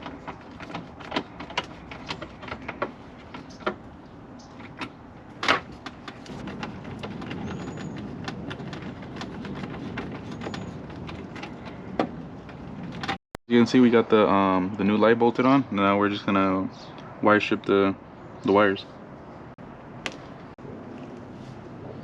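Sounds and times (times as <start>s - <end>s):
hand tools clicking and knocking: 0.0s - 3.9s, 4.5s - 13.2s.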